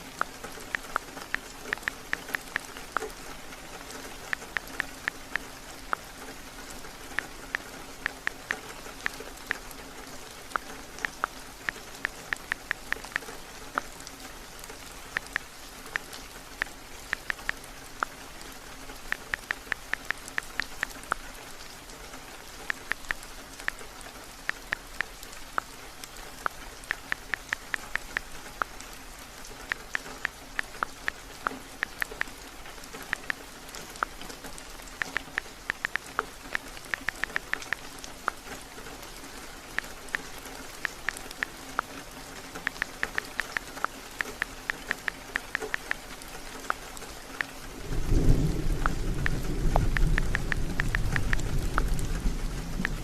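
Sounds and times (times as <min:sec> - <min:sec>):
typing on phone keyboard: 0:00.0 - 0:03.2, 0:03.8 - 0:06.1, 0:10.5 - 0:14.0, 0:15.1 - 0:18.2, 0:19.0 - 0:21.2, 0:22.7 - 0:25.7, 0:26.4 - 0:28.7, 0:29.7 - 0:32.4, 0:33.0 - 0:38.4, 0:39.7 - 0:41.9, 0:42.6 - 0:46.8, 0:48.2 - 0:52.0
heavy rain: 0:00.0 - 0:53.0.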